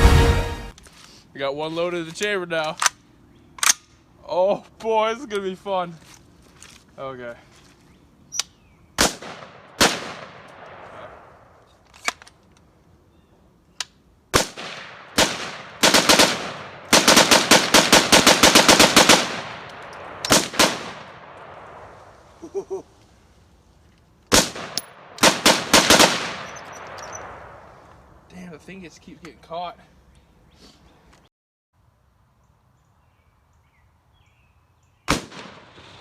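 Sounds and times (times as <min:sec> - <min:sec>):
rifle shots echoing: 0:09.0 - 0:11.3, 0:14.3 - 0:21.9, 0:24.3 - 0:27.6, 0:35.1 - 0:36.0.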